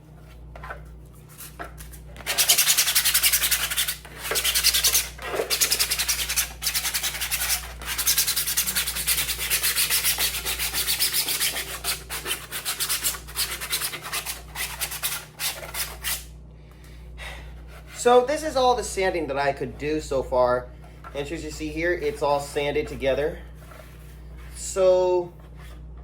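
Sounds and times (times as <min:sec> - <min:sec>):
sandpaper rasping on plastic: 0:02.2 - 0:16.3.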